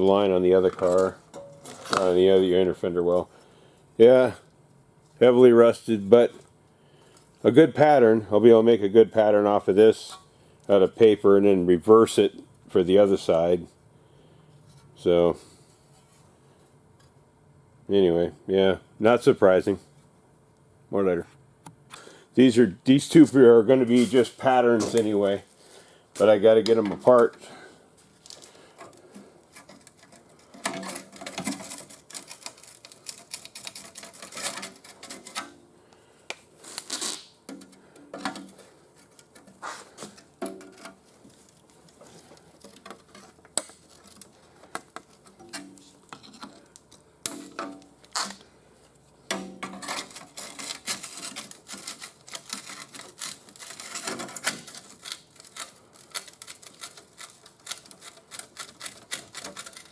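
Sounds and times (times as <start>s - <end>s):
clicking and scraping on rusted metal: 28.3s - 35.6s, 37.4s - 59.9s.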